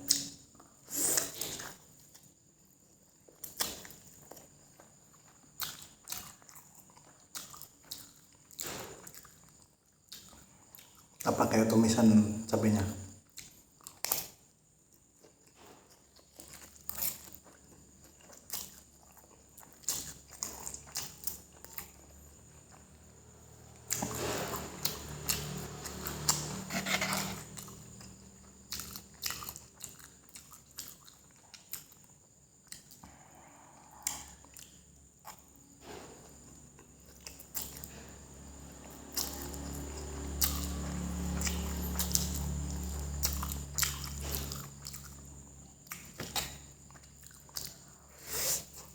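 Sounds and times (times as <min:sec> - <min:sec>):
wet chewing and lip smacks: 0:03.3 - 0:09.5, 0:16.0 - 0:23.0, 0:23.8 - 0:33.2, 0:38.8 - 0:48.0.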